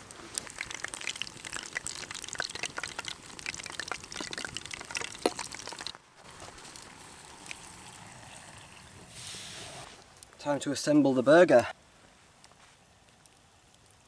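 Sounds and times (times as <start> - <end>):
onion rings frying in oil: 0.0 - 9.7.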